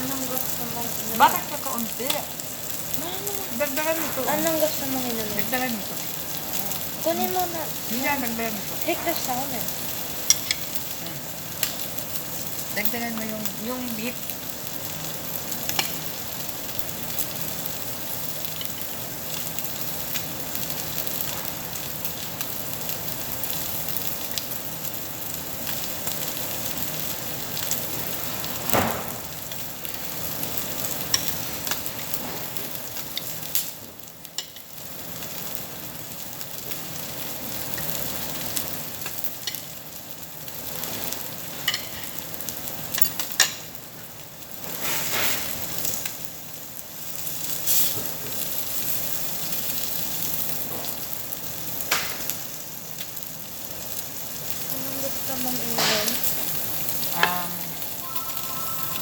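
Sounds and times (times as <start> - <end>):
meat sizzling on a grill: 0.0 - 59.0.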